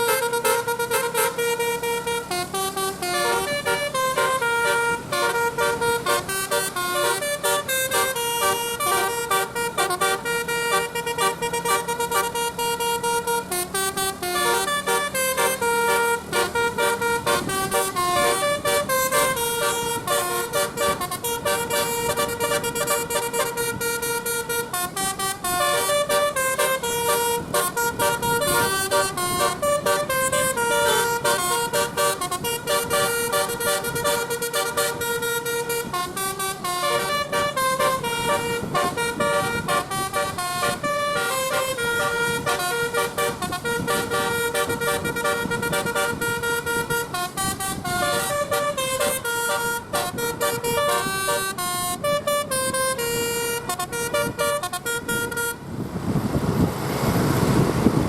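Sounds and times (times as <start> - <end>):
air-horn trumpets playing a tune: 0.0 - 55.6.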